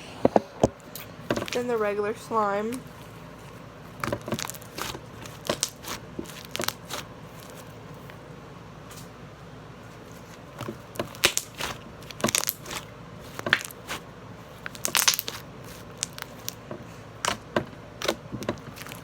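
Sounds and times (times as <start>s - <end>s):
slime squished by hand: 2.7s - 8.2s, 10.2s - 19.0s
slime crackles and pops: 4.0s - 7.1s, 10.6s - 16.6s, 17.2s - 19.0s.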